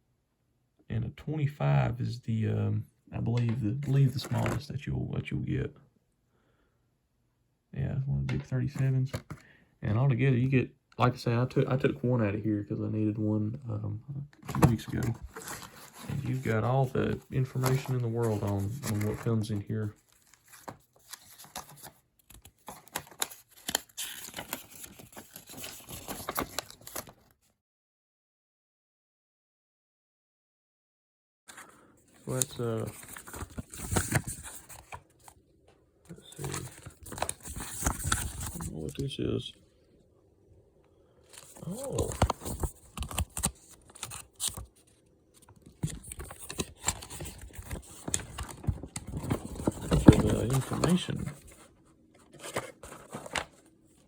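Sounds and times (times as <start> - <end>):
packaging crinkling and rustling: 14.4 - 27.3, 32.2 - 35.4, 36.1 - 39.0, 41.3 - 53.8.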